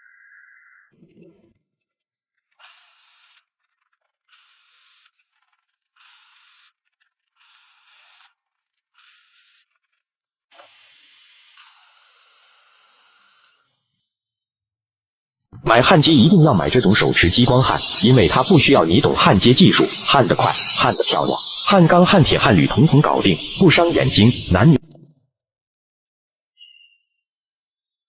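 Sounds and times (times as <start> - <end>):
short hissing bursts: 17.2 - 22.0.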